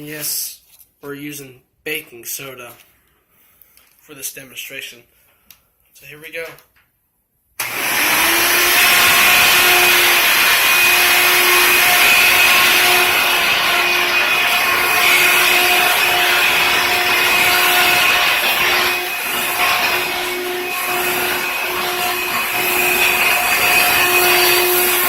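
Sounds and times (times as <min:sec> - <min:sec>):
vacuum cleaner running: 0:07.6 - 0:25.0.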